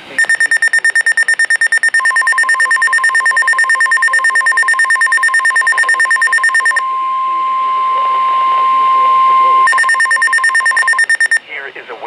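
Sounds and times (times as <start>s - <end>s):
rapid high buzzy alarm beeps: 0.2s - 6.8s, 9.6s - 11.4s
steady warning alarm tone: 0.2s - 11.4s.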